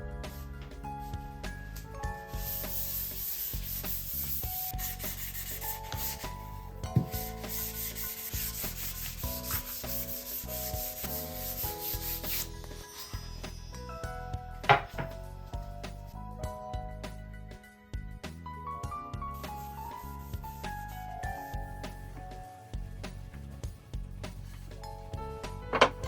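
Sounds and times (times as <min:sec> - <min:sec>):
sandpaper rubbing on wood: 0:02.4 - 0:06.4, 0:07.0 - 0:13.2.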